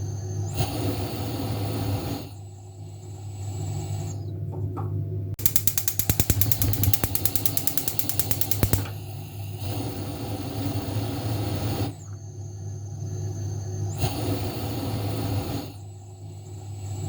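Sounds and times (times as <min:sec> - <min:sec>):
stove igniter clicking: 0:05.4 - 0:08.9.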